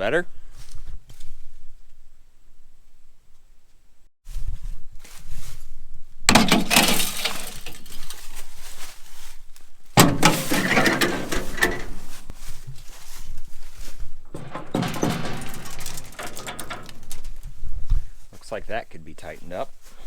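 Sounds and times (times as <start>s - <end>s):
metal clattering and clinking: 6.3s - 8.5s, 10.0s - 17.8s
loud knocks: 14.3s - 17.4s.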